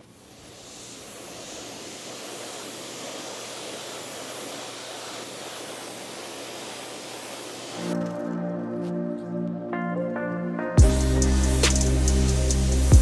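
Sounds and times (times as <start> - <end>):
water spraying hiss: 0.0 - 8.2, 10.8 - 13.0.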